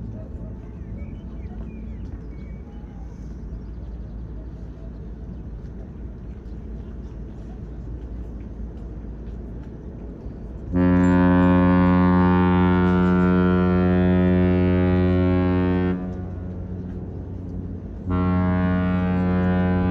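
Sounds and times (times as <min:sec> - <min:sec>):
low wind rumble: 0:00.0 - 0:19.9
ship horn blast: 0:10.6 - 0:19.9.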